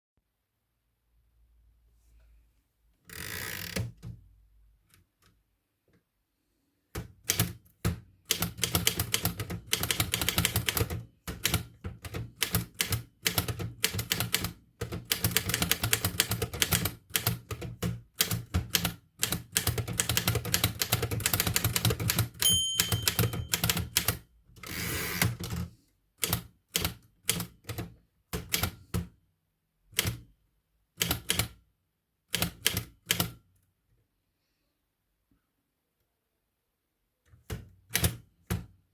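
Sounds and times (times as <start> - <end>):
typewriter typing: 7.2 - 29.0, 31.0 - 31.6, 32.3 - 33.4, 37.5 - 38.2.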